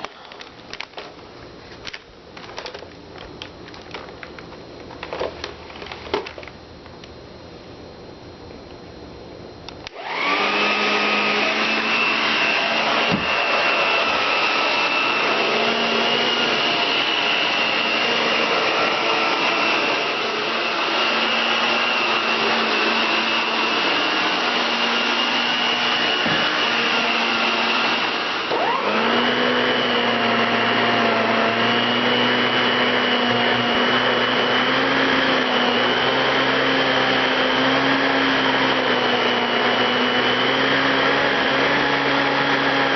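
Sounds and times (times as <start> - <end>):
vacuum motor whine with suction: 9.8 - 42.9.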